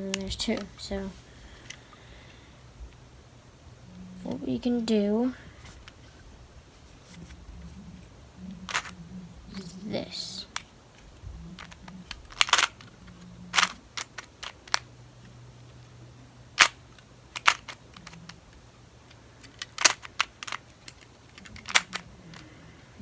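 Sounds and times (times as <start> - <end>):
plastic puzzle cube clicking: 8.5 - 9.8, 10.4 - 15.4, 16.6 - 22.6.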